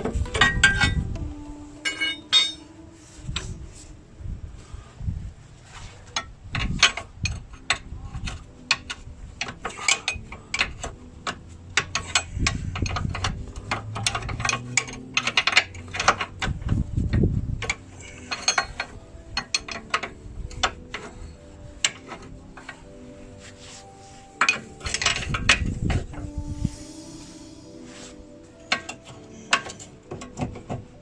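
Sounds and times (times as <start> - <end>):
metal knocks and clinks: 1.9 - 2.6.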